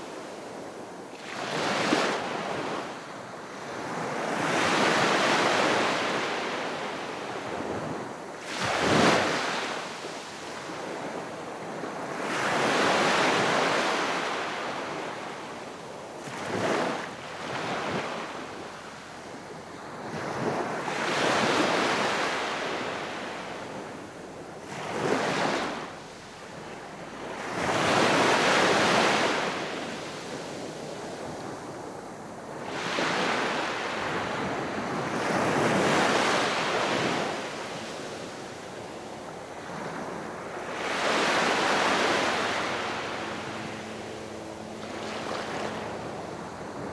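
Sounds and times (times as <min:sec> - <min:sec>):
sea waves breaking on shore: 0:24.6 - 0:46.9.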